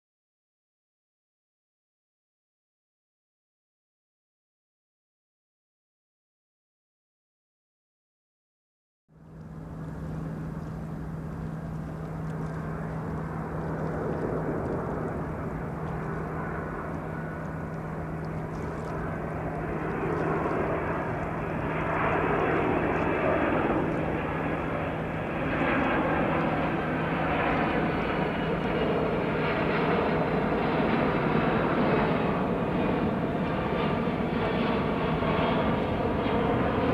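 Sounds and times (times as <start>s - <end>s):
jet engines rushing: 9.2s - 36.9s.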